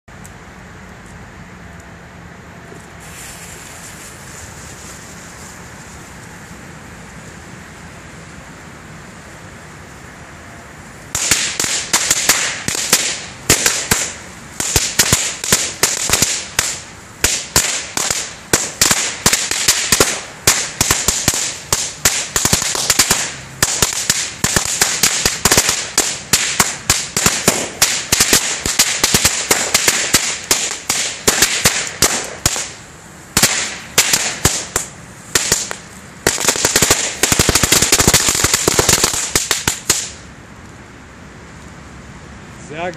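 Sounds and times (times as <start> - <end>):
firecracker string banging: 11.1 - 40.3.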